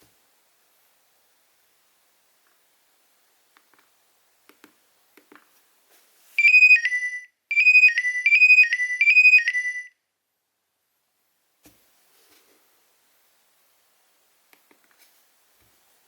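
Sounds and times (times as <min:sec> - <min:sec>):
mobile phone ringtone: 0:06.4 - 0:10.0.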